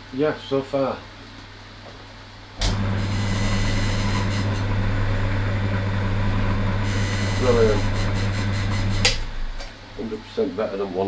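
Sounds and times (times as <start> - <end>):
drill switch click: 2.6 - 10.0
pillar drill motor running: 2.6 - 10.2.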